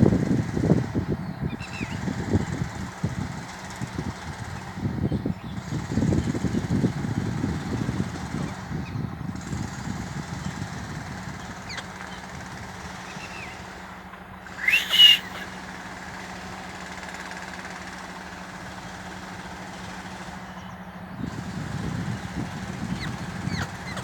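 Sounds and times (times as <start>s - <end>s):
faint bird chirps: 14.5s - 15.6s
parakeet screeching: 14.6s - 15.5s.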